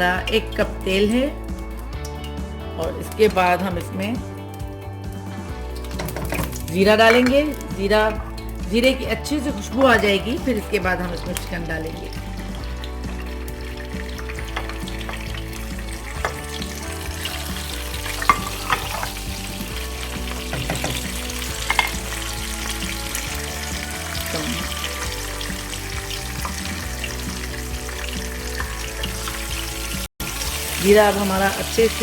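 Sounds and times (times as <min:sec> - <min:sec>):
seeds sizzling in hot oil: 0:11.4 - 0:32.0.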